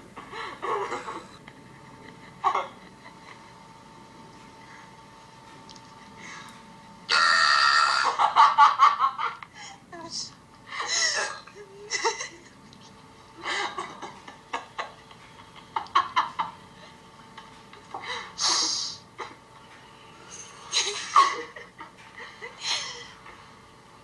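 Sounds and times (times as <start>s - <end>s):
people laughing and giggling: 0.2s - 3.8s, 8.1s - 9.8s, 10.7s - 18.5s, 20.7s - 23.4s.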